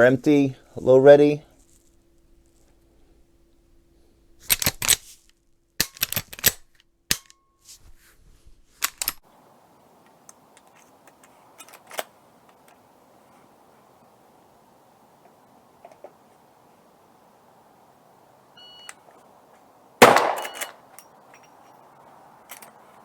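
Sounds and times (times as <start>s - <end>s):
rifle action clicking: 5.8s - 7.4s, 8.8s - 9.2s, 20.0s - 20.8s.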